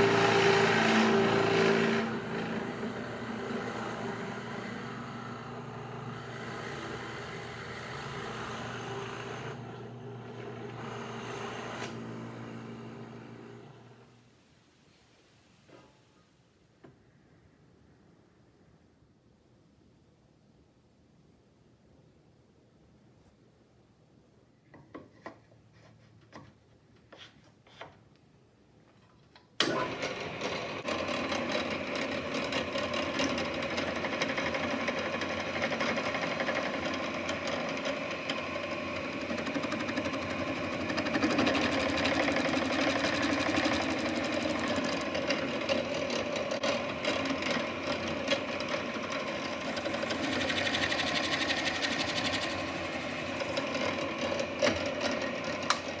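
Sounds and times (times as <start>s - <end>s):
electric power tool whirring: 0.0s - 14.0s, 29.6s - 56.0s.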